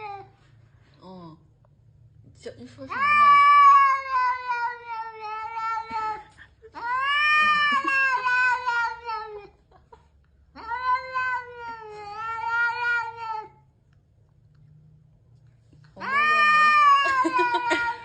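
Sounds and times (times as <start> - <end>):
cat yowling: 2.9 - 9.6, 10.6 - 13.6, 16.0 - 18.0.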